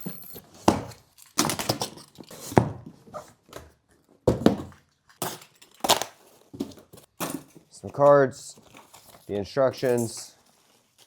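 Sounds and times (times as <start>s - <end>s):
cardboard and packing rustling: 5.9s - 9.4s, 10.3s - 11.0s.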